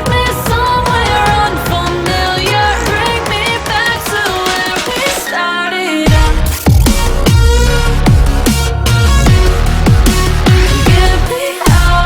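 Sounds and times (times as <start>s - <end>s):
synth passage: 0.0s - 12.0s
heavy bass drop: 6.1s - 12.0s.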